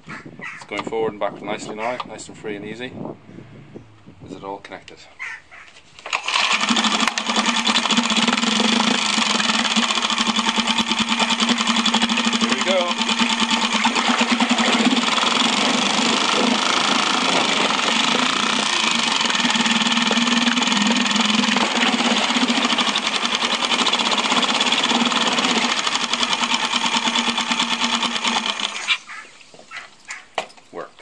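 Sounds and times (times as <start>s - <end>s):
outboard engine running: 6.1s - 29.0s.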